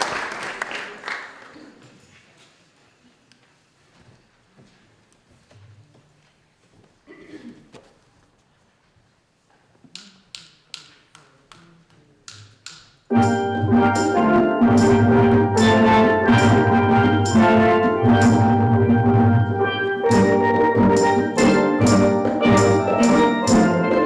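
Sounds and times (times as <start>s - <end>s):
steel drum band playing: 13.1s - 24.0s.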